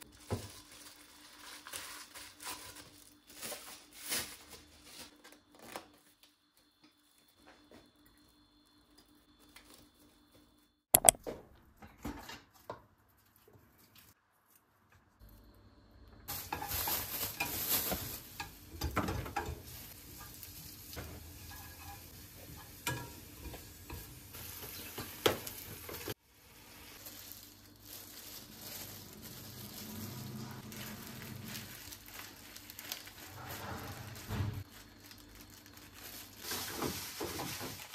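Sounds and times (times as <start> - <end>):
food sizzling: 16.3 - 33.2.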